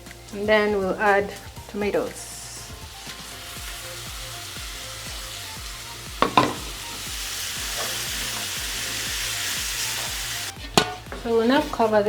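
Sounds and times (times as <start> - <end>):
sauce sizzling in a pan: 0.0 - 12.0
utensil clanking against pan: 6.1 - 12.0.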